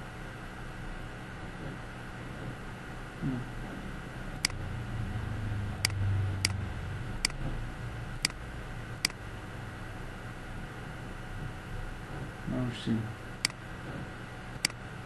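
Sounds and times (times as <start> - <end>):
low hum and hiss: 0.0 - 15.0
computer mouse clicks: 14.6 - 14.8.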